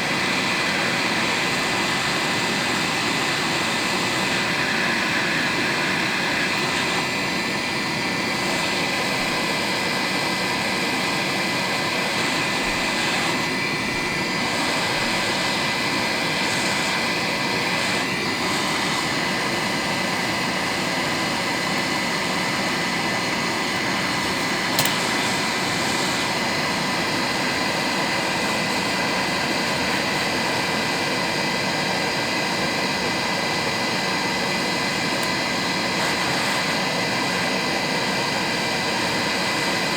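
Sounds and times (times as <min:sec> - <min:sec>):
hot air gun fan blowing: 0:00.0 - 0:39.9
click: 0:24.7 - 0:25.1.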